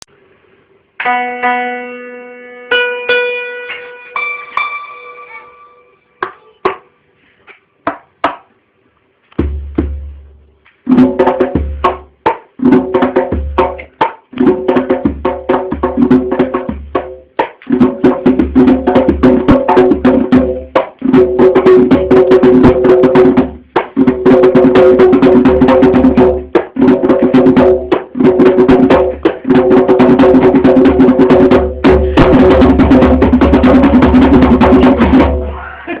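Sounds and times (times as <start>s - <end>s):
held tone of several pitches: 1.0s - 6.7s
fast clicking percussion: 10.6s - 35.4s.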